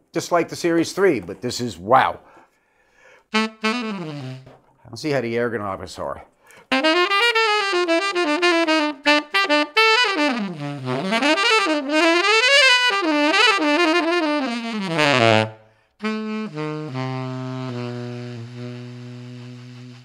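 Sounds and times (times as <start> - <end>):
tenor saxophone fast runs: 3.3 - 4.6, 6.7 - 20.0.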